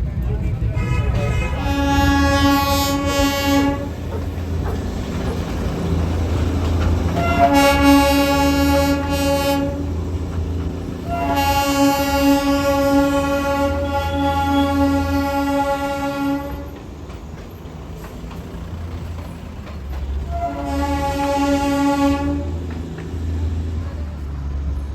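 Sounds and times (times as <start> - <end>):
moving train rumble: 0.0 - 24.9
train horn blasts: 0.6 - 4.1, 7.2 - 10.0, 11.0 - 16.8, 20.3 - 22.6.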